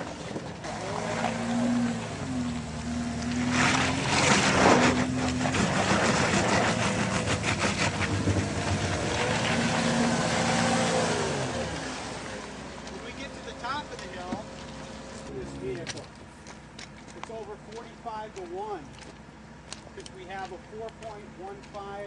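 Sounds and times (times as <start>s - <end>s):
car engine pulling under load: 0.0s - 17.0s
tyres on dirt: 0.0s - 22.0s.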